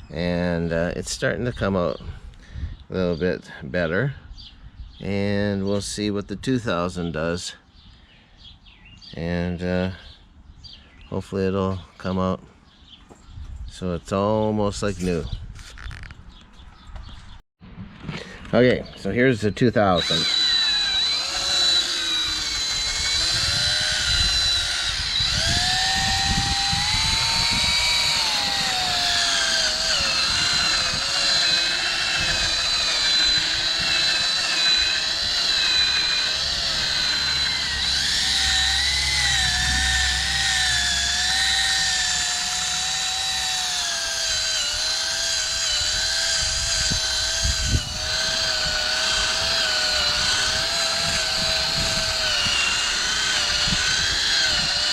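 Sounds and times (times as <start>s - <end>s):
power drill sanding plastic: 19.9s - 54.9s.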